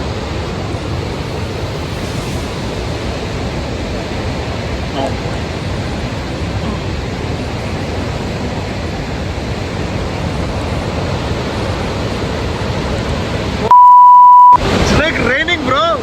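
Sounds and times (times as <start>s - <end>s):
waterfall roaring: 0.0s - 13.7s, 14.6s - 16.0s
high beep: 13.6s - 14.6s.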